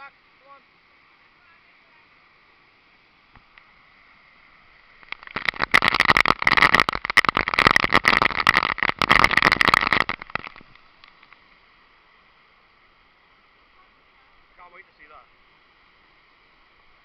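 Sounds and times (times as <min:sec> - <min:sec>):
waterfall roaring: 0:03.7 - 0:11.3
crackling on microphone: 0:05.0 - 0:11.5.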